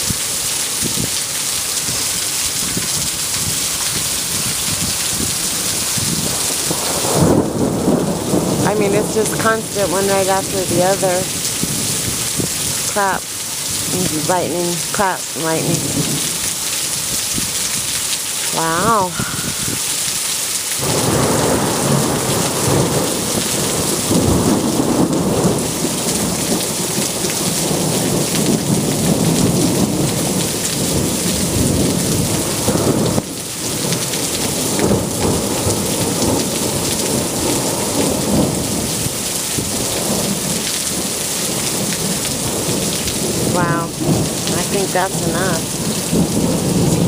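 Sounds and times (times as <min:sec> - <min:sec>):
heavy rain falling: 0:00.0 - 0:47.0
thunder rumbling: 0:01.8 - 0:20.1, 0:20.8 - 0:47.0.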